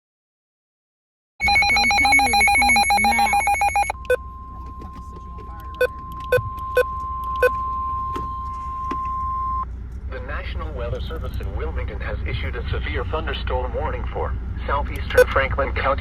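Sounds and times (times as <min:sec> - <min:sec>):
electronic alarm pulsing rapidly: 0:01.4 - 0:04.3
short sharp beeps: 0:01.4 - 0:09.6
steady warning alarm tone: 0:01.4 - 0:09.6.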